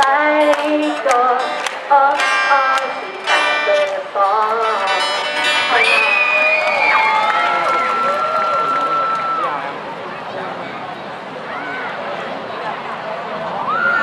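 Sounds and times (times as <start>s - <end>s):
song with plucked strings: 0.0s - 6.1s.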